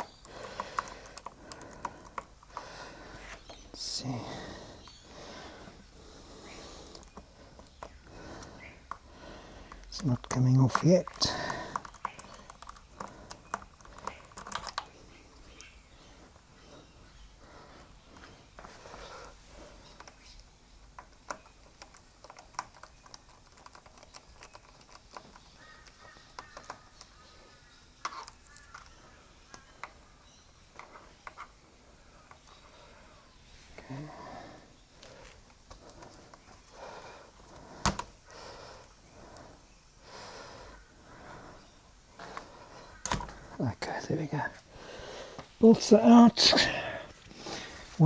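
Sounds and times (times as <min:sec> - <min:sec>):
heavy breathing: 0:00.0 - 0:10.0, 0:10.8 - 0:20.3, 0:30.8 - 0:43.6, 0:44.4 - 0:45.7, 0:46.3 - 0:48.0
hand tools clicking: 0:09.7 - 0:15.0.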